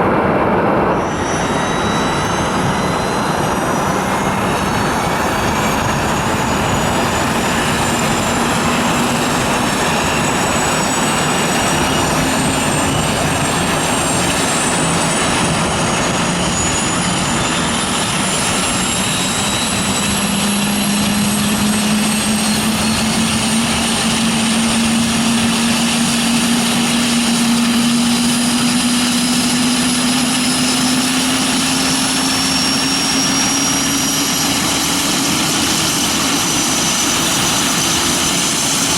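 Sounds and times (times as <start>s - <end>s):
helicopter rotor and turbine whine: 0.0s - 38.9s.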